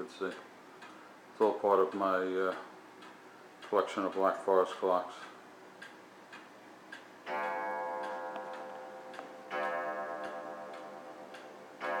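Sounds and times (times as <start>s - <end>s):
clock ticking: 0.0s - 12.0s
clock striking gong: 7.2s - 12.0s.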